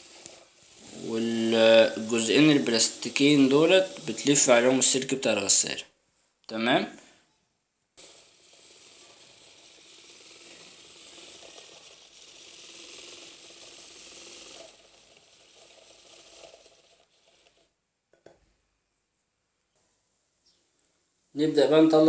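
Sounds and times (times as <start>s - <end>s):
small motor whirring: 0.0s - 5.8s, 8.0s - 17.8s.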